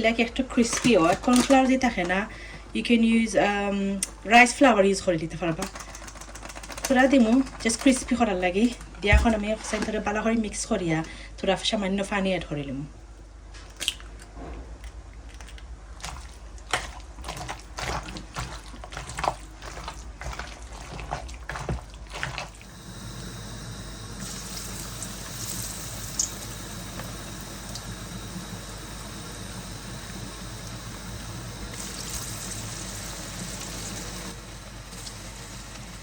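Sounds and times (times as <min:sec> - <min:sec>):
batter squelching in a bowl: 0:13.7 - 0:22.7
frying oil sizzling and crackling: 0:22.6 - 0:36.0.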